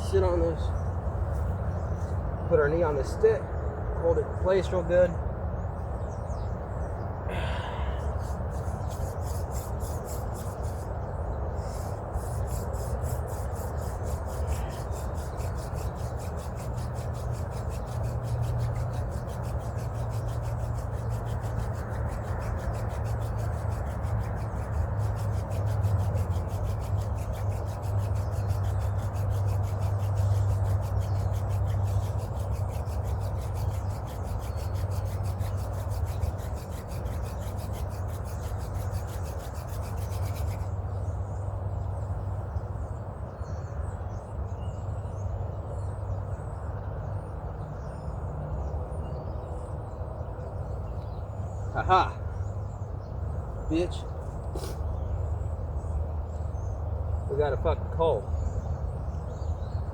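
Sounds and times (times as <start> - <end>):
wood grinding on wood: 8.0 - 10.9, 11.7 - 40.8, 54.0 - 54.9.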